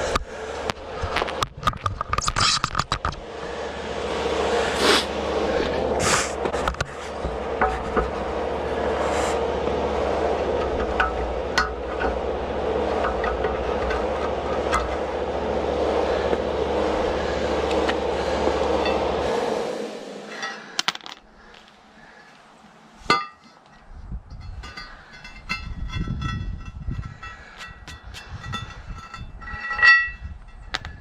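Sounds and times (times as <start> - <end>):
motor humming: 0.0 - 23.1
short hisses: 4.6 - 5.1.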